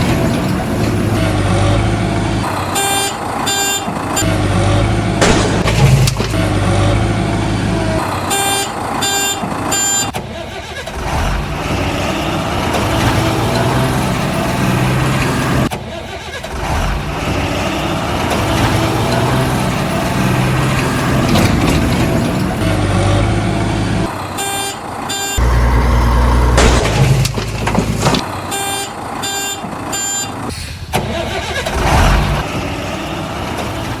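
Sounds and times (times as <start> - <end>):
heavy truck and digger engines: 0.0 - 34.0.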